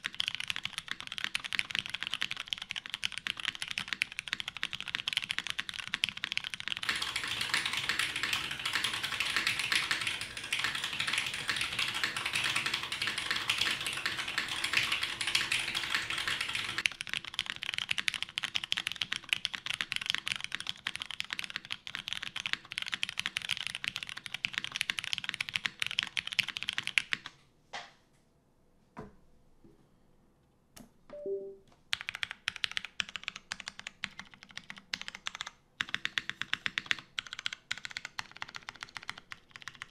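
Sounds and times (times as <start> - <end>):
mechanical keyboard typing: 0.0 - 27.3, 31.1 - 39.9.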